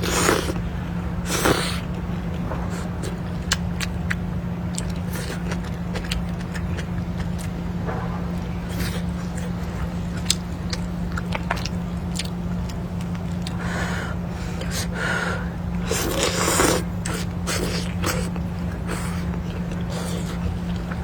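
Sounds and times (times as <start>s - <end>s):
slurping noodles: 0.0s - 0.6s, 1.2s - 1.9s, 13.4s - 21.0s
chewing: 0.0s - 0.7s, 1.3s - 15.0s, 15.6s - 21.0s
steady low hum: 0.0s - 21.0s.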